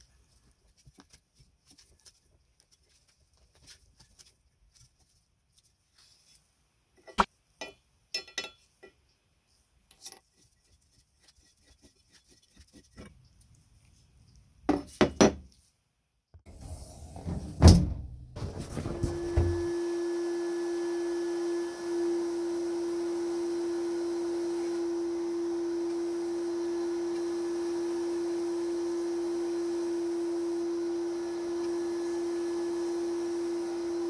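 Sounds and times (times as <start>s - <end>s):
background noise: 0.0s - 19.7s.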